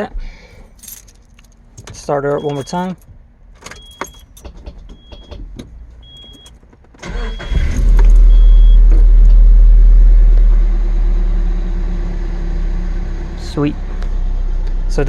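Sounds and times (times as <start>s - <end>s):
key clicking in ignition: 0.8s - 7.1s
truck engine cranking and running: 1.0s - 12.2s
warning chime beeping: 2.3s - 3.0s.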